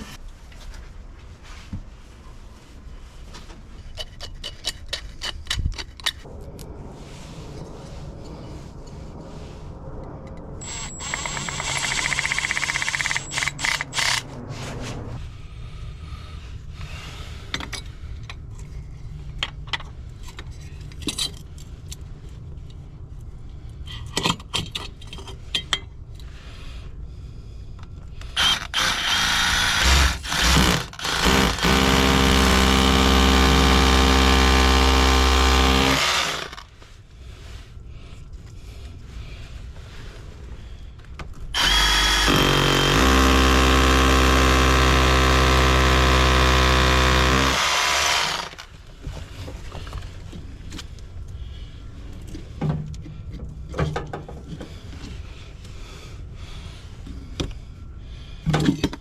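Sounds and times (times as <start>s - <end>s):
cordless power drill running: 10.6s - 14.2s, 28.4s - 36.7s, 41.6s - 48.7s.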